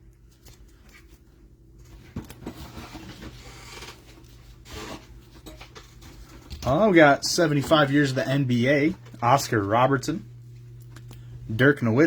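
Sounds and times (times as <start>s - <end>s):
trading cards rustling: 0.2s - 4.6s.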